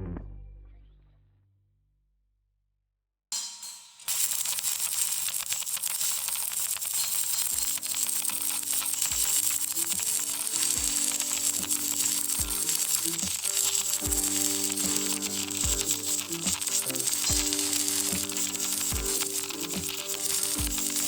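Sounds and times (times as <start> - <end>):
background music with bass: 0.0 - 1.4
welding arc crackling: 3.4 - 21.0.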